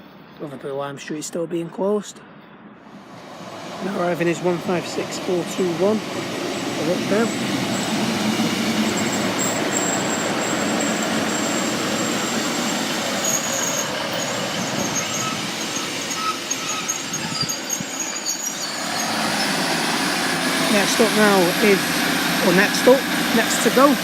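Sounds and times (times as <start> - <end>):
train rushing rail noise: 2.2 - 24.0
high-pitched wheel squeals: 4.9 - 24.0.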